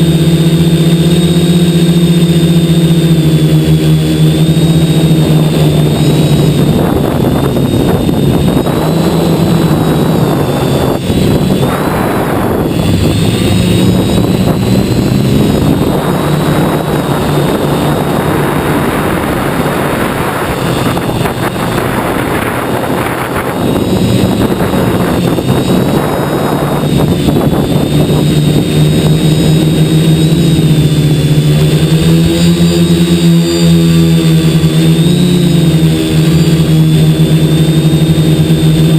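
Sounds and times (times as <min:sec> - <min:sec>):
drone motors buzzing: 0:00.0 - 0:38.9
wind on microphone: 0:00.0 - 0:38.9.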